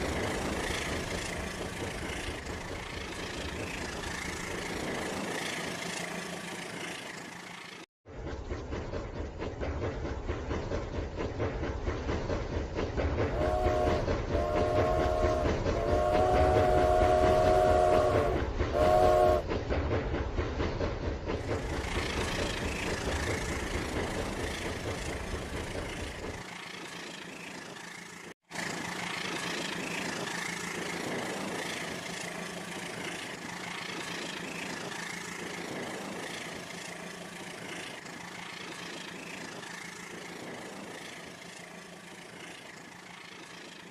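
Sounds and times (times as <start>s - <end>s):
toy train horn toots: 13.3s - 19.4s.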